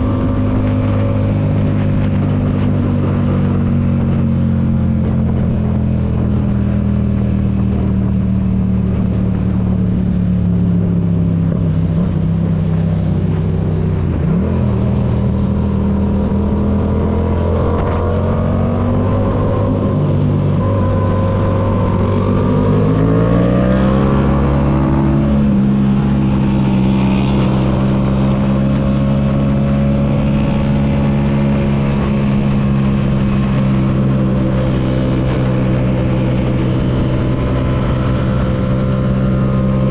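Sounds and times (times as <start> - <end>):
motorcycle engine accelerating: 0.0 - 39.9.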